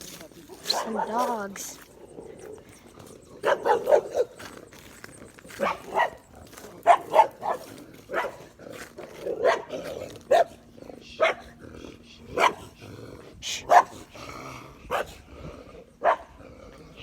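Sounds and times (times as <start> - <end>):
dogs barking: 0.0 - 17.0.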